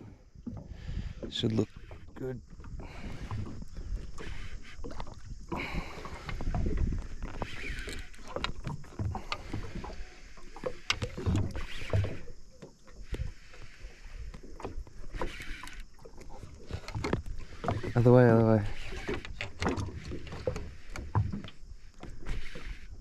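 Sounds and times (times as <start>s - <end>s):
faint water noise: 0.0s - 23.0s
knocks and rattles in aluminium boat: 0.0s - 23.0s.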